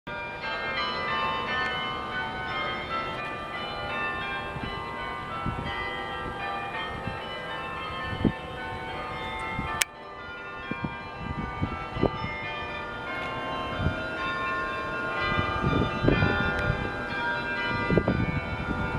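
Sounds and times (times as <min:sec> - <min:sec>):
tower bells ringing a tune: 0:00.2 - 0:08.6.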